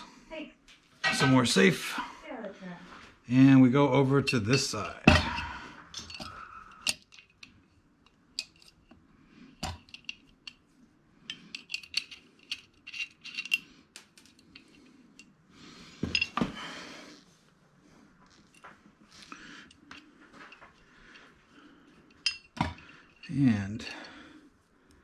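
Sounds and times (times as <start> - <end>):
hand tools clicking on metal: 4.2 - 9.0, 9.6 - 10.6, 11.3 - 15.3
metal clatter: 11.3 - 13.6.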